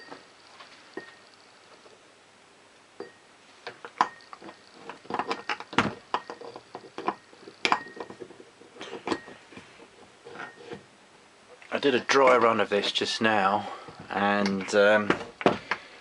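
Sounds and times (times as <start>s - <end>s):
small steel parts clinking: 3.0s - 9.7s.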